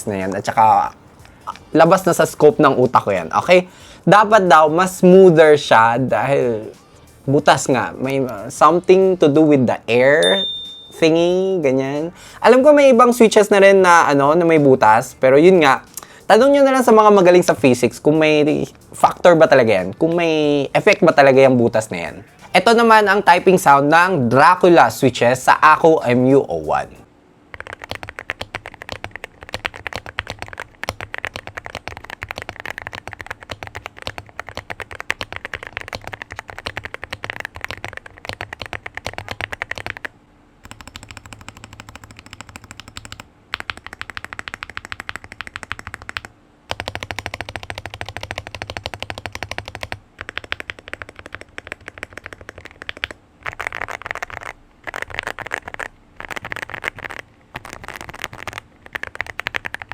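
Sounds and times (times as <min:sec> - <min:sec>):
keyboard typing: 0:27.5 - 0:59.9.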